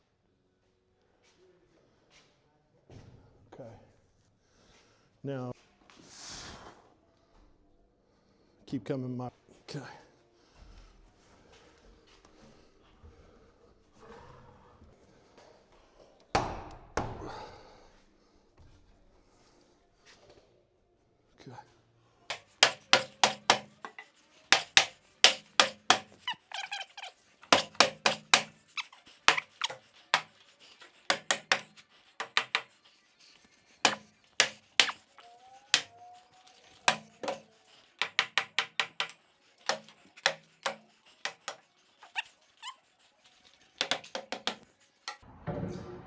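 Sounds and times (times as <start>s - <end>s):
hammer driving nails into wood: 22.3s - 32.8s, 33.8s - 42.3s, 43.8s - 45.2s
short squeak: 22.4s - 33.0s, 39.6s - 44.6s.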